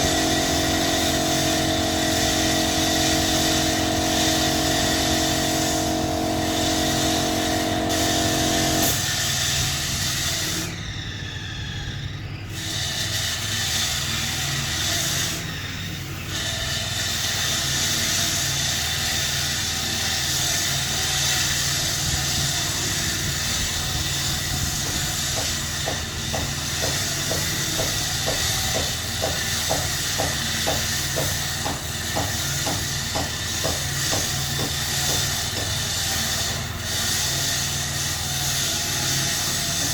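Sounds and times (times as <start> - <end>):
motor hum: 0.0 - 9.0
paint spray gun hissing: 0.0 - 9.6.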